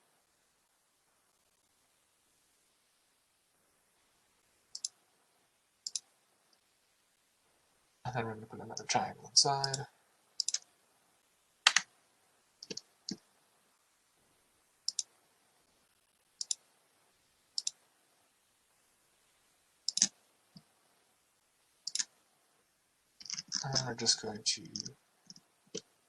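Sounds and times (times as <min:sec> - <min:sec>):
computer mouse clicking: 0:04.7 - 0:05.0, 0:05.8 - 0:06.6, 0:09.6 - 0:09.8, 0:10.4 - 0:10.7, 0:11.7 - 0:11.9, 0:12.6 - 0:13.2, 0:14.9 - 0:15.1, 0:16.4 - 0:16.6, 0:17.6 - 0:17.8, 0:19.9 - 0:20.7, 0:21.8 - 0:22.1, 0:24.7 - 0:25.9.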